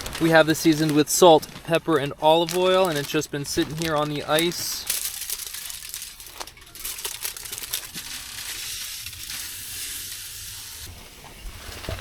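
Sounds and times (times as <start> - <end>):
steak sizzling: 5.0 - 10.9.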